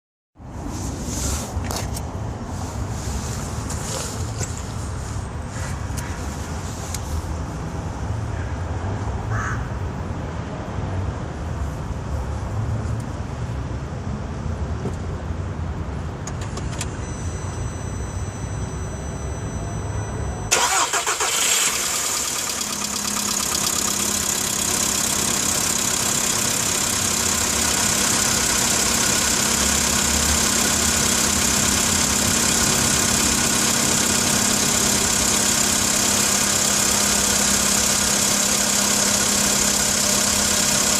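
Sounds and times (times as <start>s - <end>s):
car engine starting and idling: 16.3s - 40.9s
faint high tone: 17.0s - 20.5s.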